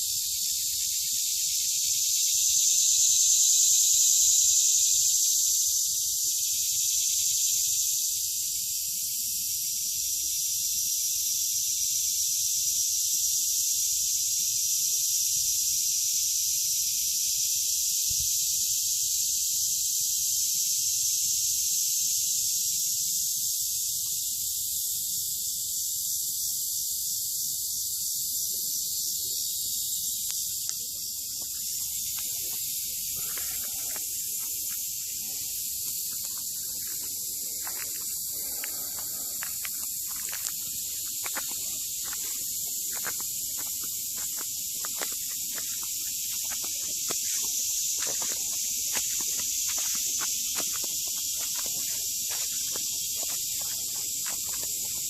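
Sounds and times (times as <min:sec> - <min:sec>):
insect chorus hissing: 0:00.0 - 0:55.0.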